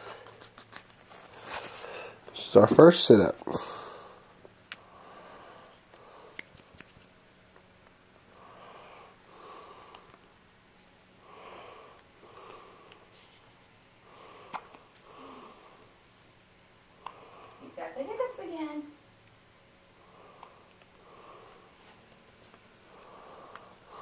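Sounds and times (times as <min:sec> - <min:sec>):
baby hiccupping: 0:00.0 - 0:00.9, 0:14.2 - 0:14.8
baby breathing softly: 0:11.3 - 0:15.9.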